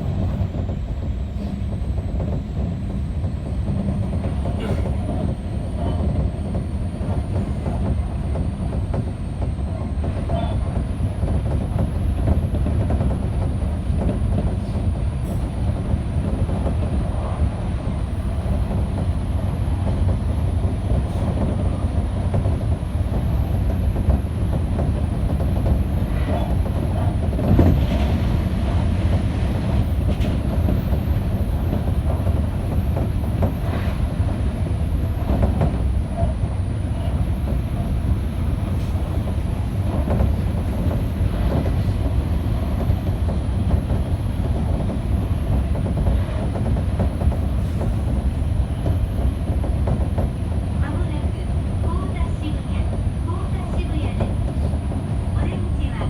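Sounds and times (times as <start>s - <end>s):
electric train rumbling: 0.0s - 56.0s
train wheels knocking: 39.2s - 51.1s.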